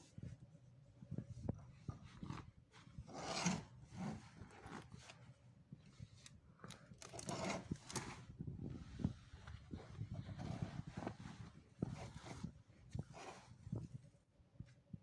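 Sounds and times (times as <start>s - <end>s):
rustling and rubbing of handling: 0.0s - 15.0s.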